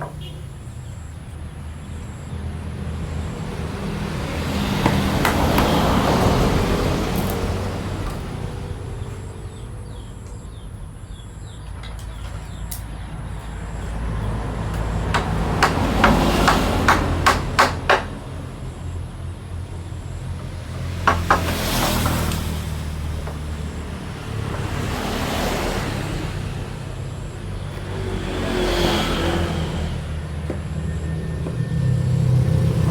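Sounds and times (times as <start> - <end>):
traffic rumble: 0.0 - 32.9
hammer striking wood: 4.8 - 6.2, 14.7 - 18.3, 20.4 - 22.5.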